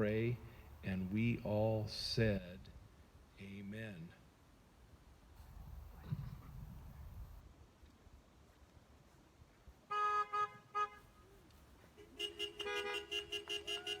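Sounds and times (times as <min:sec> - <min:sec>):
car horns honking: 0:09.9 - 0:11.2, 0:12.0 - 0:14.0.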